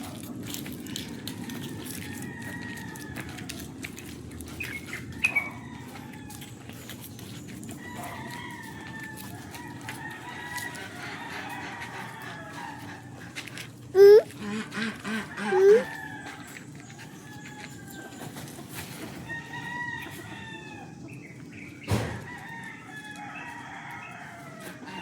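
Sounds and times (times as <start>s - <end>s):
chickens calling: 0.0s - 25.0s
rooster crowing: 1.4s - 3.7s, 7.8s - 13.0s, 15.1s - 18.2s, 19.2s - 20.9s, 22.2s - 25.0s.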